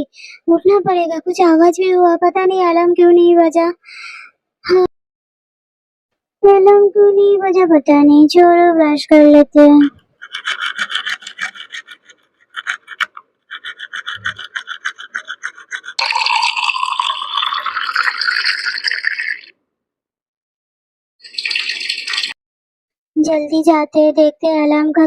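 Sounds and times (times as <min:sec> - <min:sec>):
toothbrush scrubbing teeth: 0:10.0 - 0:19.5.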